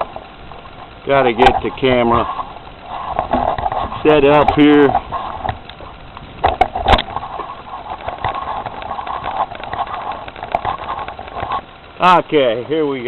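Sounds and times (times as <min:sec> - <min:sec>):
sharp engine knocks: 0:03.1 - 0:11.6.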